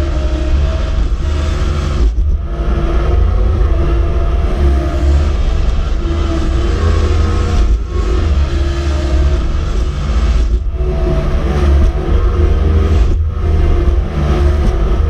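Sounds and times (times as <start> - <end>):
engine whine: 0.0 - 15.0.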